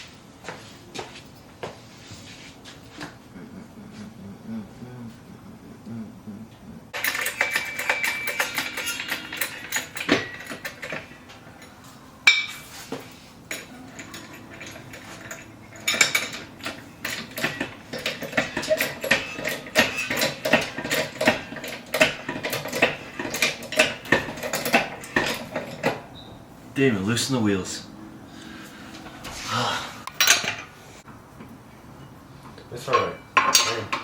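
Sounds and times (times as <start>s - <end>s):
metal tools clinking: 7.0s - 26.2s, 30.2s - 30.7s, 32.8s - 34.0s.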